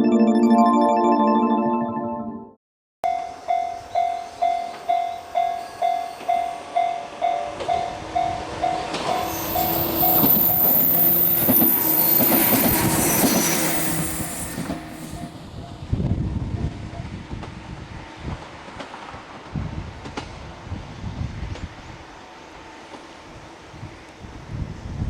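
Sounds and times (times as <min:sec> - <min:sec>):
electric train passing: 0:03.3 - 0:15.6
level-crossing alarm ringing: 0:09.2 - 0:15.3
high-pitched squeal: 0:09.2 - 0:15.4.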